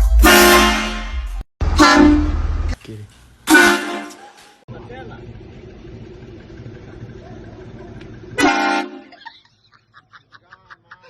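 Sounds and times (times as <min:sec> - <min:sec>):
train air horn blast: 0:00.2 - 0:02.4, 0:03.5 - 0:04.2, 0:08.4 - 0:09.1.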